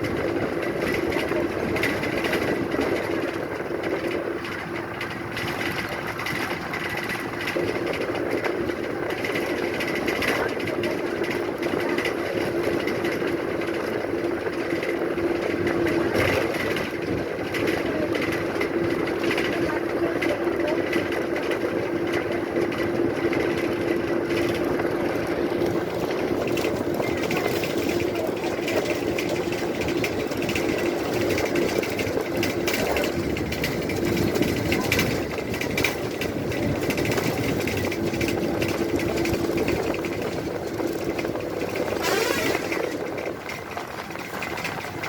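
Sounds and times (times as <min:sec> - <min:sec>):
bus engine running: 0:00.0 - 0:45.0.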